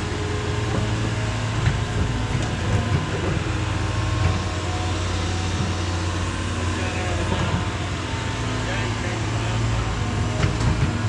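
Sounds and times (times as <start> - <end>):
heavy diesel engine under load: 0.0 - 11.0.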